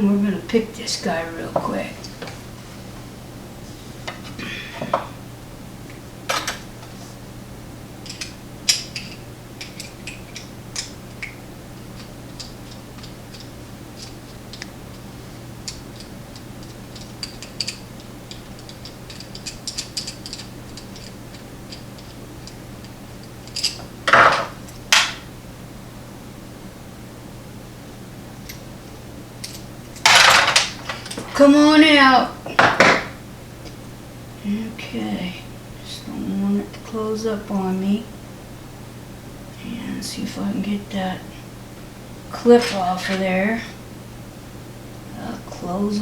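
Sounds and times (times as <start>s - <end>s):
lock-picking tools clicking in padlock: 15.6s - 23.8s.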